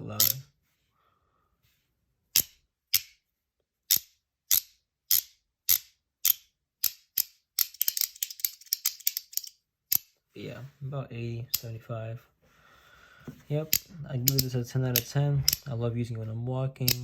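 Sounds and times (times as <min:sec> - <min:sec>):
magnetic fidget coin clicking: 0:03.9 - 0:10.0, 0:13.8 - 0:15.6.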